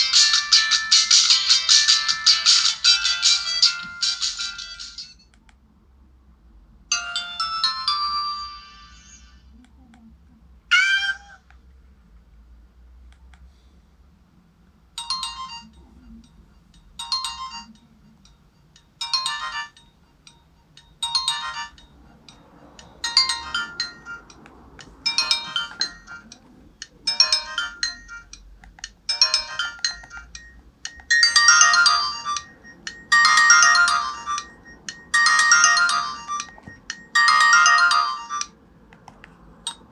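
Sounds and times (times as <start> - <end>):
mobile phone ringtones: 0.0 - 5.2, 6.9 - 9.3, 15.0 - 16.2, 17.0 - 18.2, 19.0 - 28.4, 29.1 - 38.6.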